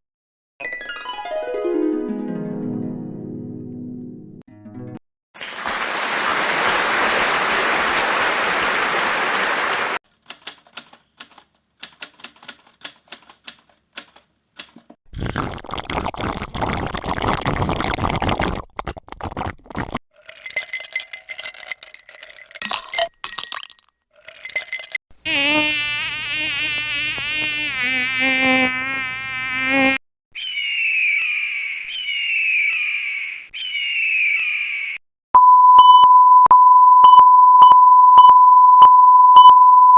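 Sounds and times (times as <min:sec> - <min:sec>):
burst of noise: 0:05.4 - 0:10.0
scattered clicks: 0:10.1 - 0:15.0
falling chirps: 0:29.3 - 0:35.0.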